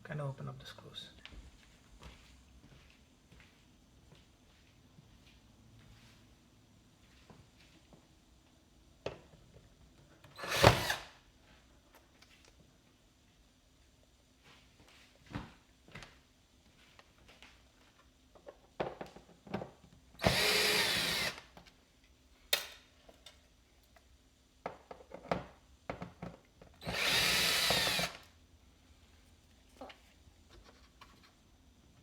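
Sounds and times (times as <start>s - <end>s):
power screwdriver whirring: 10.4s - 11.1s, 20.2s - 21.5s, 26.8s - 28.2s.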